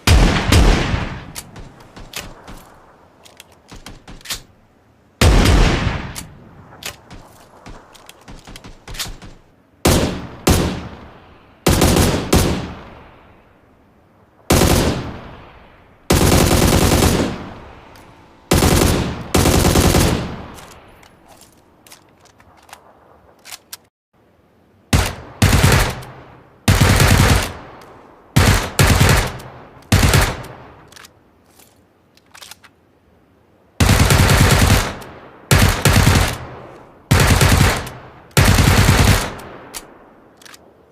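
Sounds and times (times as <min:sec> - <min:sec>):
single gunshots: 0:00.0 - 0:02.8, 0:05.2 - 0:06.4
automatic gunfire bursts: 0:11.7 - 0:12.7, 0:14.5 - 0:15.1, 0:16.1 - 0:17.4, 0:18.5 - 0:20.3, 0:25.0 - 0:26.1, 0:26.7 - 0:27.6, 0:28.4 - 0:30.5, 0:33.8 - 0:39.5.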